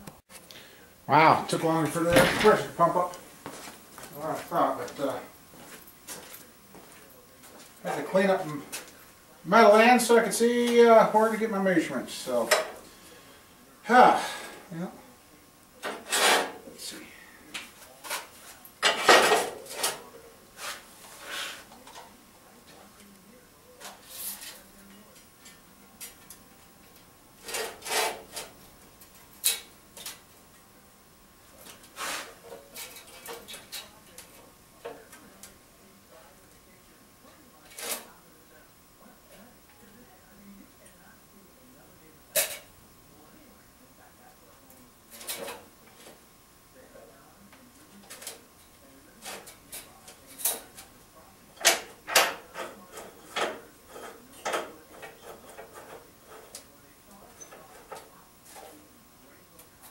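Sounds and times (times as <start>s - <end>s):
tools clunking on workbench: 2.0s - 2.7s.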